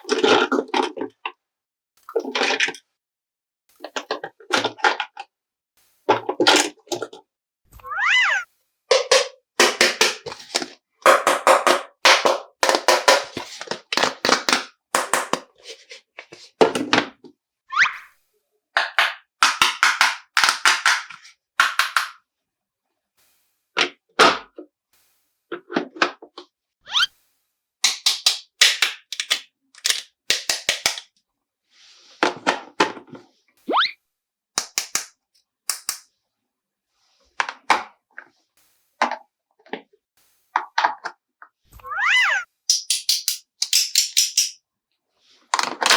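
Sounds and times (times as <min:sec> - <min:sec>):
plastic toy pieces clicking: 0:18.8 - 0:22.2, 0:27.8 - 0:31.0, 0:35.7 - 0:36.0, 0:42.7 - 0:44.6.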